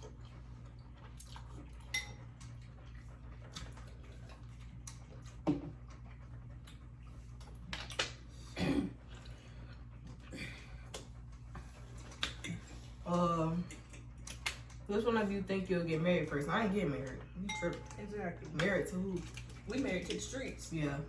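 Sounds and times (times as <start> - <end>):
eating noises: 0.0 - 13.0
utensils clinking on plates: 17.5 - 18.0.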